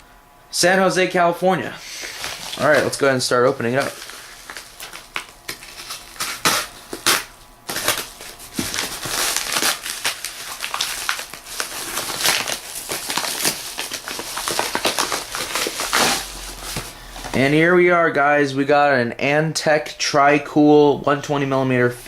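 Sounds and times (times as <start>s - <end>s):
packaging ripping: 2.0s - 17.0s
wrapping crinkling: 2.0s - 17.5s.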